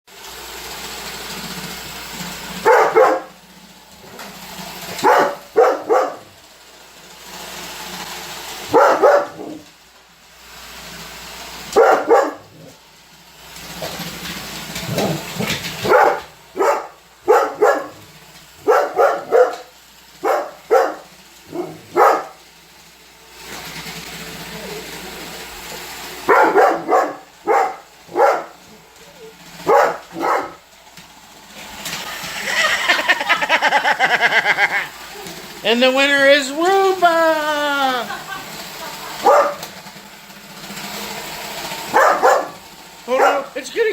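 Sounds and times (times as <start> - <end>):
robot vacuum humming: 0.1 - 43.9
dog barking: 2.6 - 3.3, 5.0 - 6.3, 8.7 - 9.6, 11.8 - 12.5, 15.8 - 18.0, 18.6 - 22.4, 26.3 - 28.6, 29.6 - 30.6, 39.2 - 39.6, 41.9 - 43.5.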